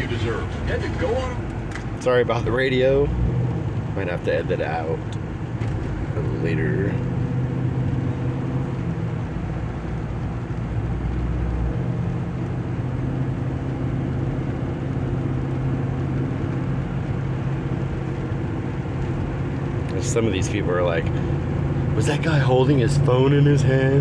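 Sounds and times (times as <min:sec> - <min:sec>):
deep low rumble: 0:00.0 - 0:04.0, 0:16.3 - 0:20.2
car engine drone: 0:00.0 - 0:24.0
tyre and road noise: 0:00.0 - 0:24.0.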